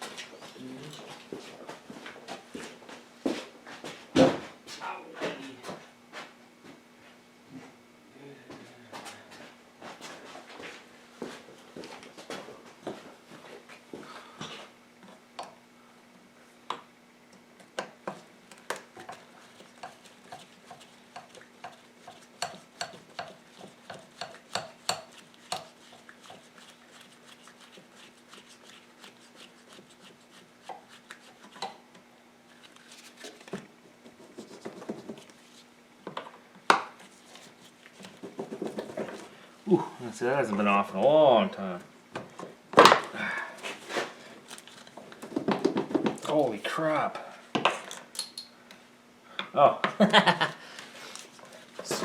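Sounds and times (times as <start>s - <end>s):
faint steady hum: 0.0s - 52.0s.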